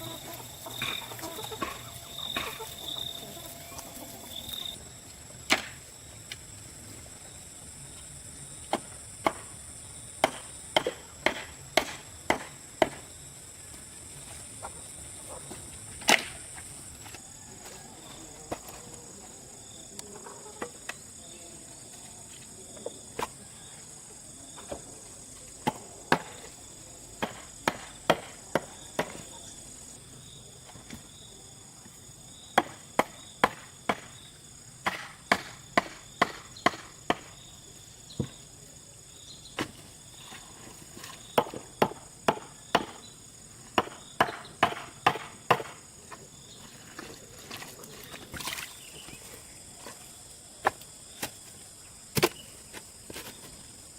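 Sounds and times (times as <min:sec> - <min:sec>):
insect chirring: 0:00.0 - 0:05.1.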